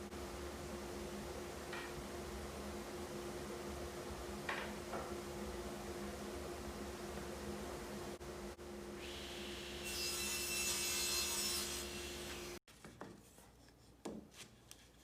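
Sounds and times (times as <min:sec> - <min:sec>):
table saw cutting wood: 0:09.0 - 0:12.6.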